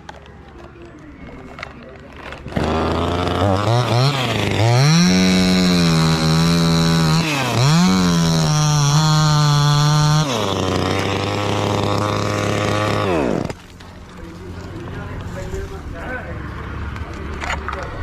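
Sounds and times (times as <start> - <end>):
chainsaw engine revving: 2.1 - 15.3.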